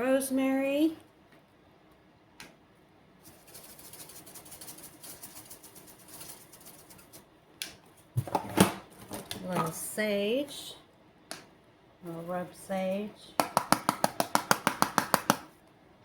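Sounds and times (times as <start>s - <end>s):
spice jar shaken: 3.2s - 7.3s.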